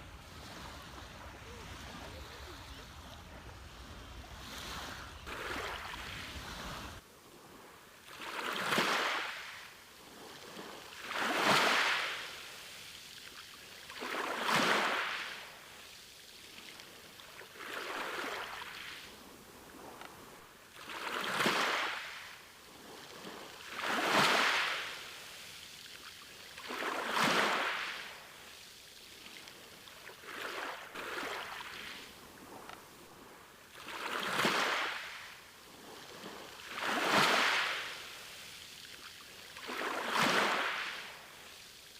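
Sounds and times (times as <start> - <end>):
sea waves breaking: 0.0 - 41.9.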